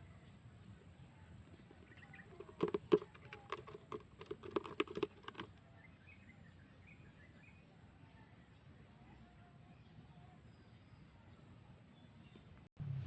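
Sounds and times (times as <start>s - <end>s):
light taps and clicks: 1.5s - 5.5s.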